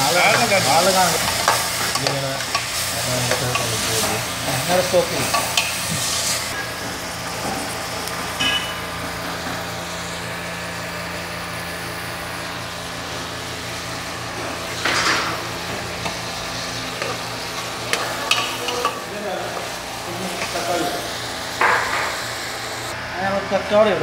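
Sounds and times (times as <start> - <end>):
onions sizzling in oil: 0.0 - 22.9
constant hum: 0.0 - 24.0.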